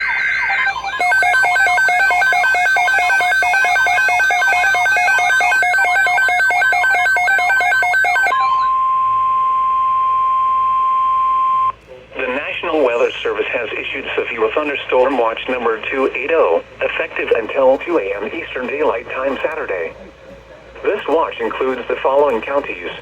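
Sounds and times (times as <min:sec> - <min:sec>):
pulsing electronic warble: 0:00.0 - 0:08.8
steady alert tone: 0:00.0 - 0:08.9.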